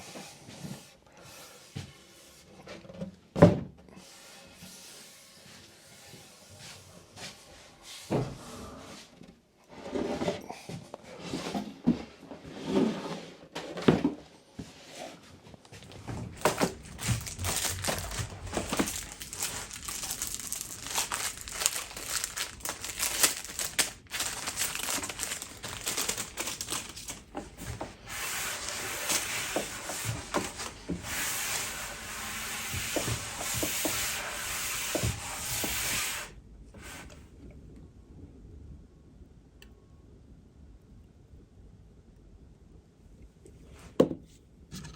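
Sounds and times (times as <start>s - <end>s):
cloth wiping over wood: 28.0s - 36.3s.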